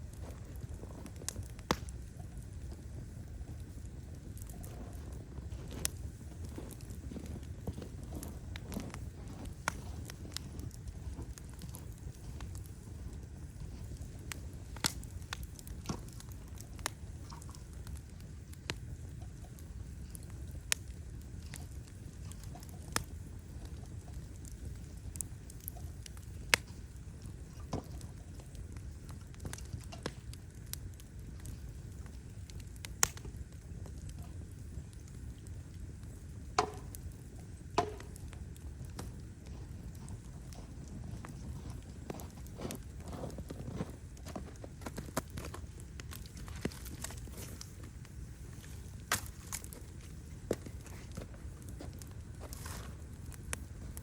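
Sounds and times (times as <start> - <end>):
low steady rumble: 0.0 - 54.0
wood fire crackling: 0.0 - 54.0.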